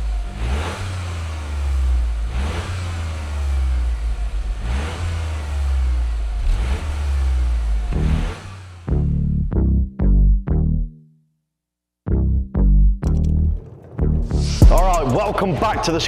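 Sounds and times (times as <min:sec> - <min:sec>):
car engine revving: 0:00.0 - 0:09.4, 0:13.4 - 0:16.0.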